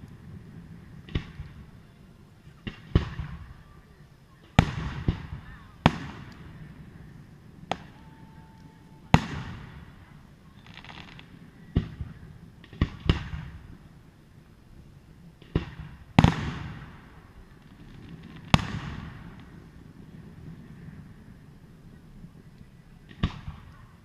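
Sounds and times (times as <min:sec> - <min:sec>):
firework crackle: 0:00.0 - 0:24.0
firework shells booming: 0:00.5 - 0:01.7, 0:02.6 - 0:03.6, 0:04.4 - 0:08.4, 0:09.1 - 0:13.8, 0:15.4 - 0:20.9, 0:23.0 - 0:23.7.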